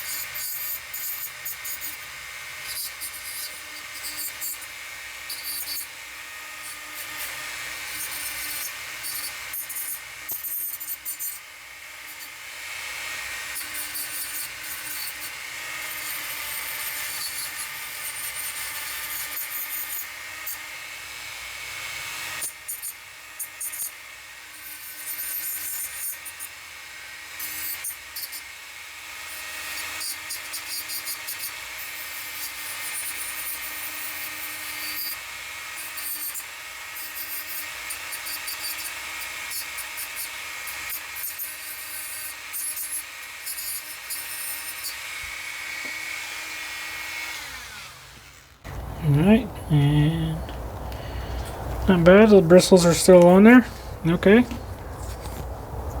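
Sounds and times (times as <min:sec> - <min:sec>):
rotary tool motor whine: 0:00.0 - 0:49.0.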